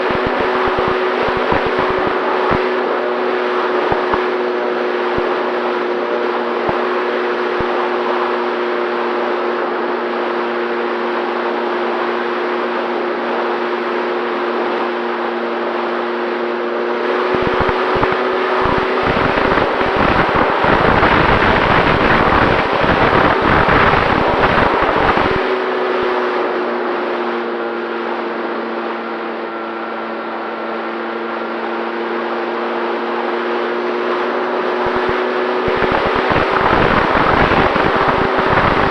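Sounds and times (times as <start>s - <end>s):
wind noise on microphone: 0.0s - 5.8s, 17.0s - 25.6s, 34.7s - 38.9s
electric motor and propeller whirring: 0.0s - 38.9s.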